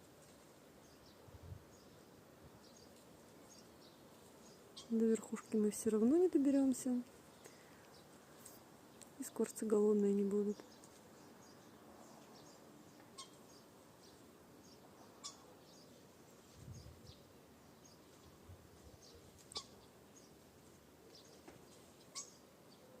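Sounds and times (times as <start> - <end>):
small birds chirping: 0.0 - 23.0
sharp short bird calls: 13.1 - 13.6, 15.2 - 15.6, 19.5 - 19.9, 22.0 - 22.4.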